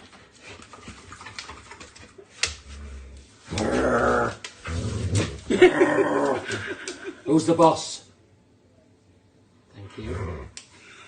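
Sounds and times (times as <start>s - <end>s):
puppy play-growling: 0.6s - 6.7s.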